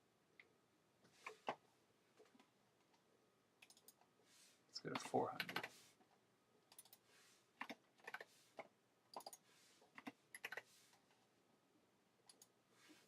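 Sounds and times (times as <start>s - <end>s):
computer keyboard typing: 3.6s - 4.0s, 4.9s - 5.8s, 6.7s - 7.0s, 7.6s - 8.3s, 9.1s - 10.7s.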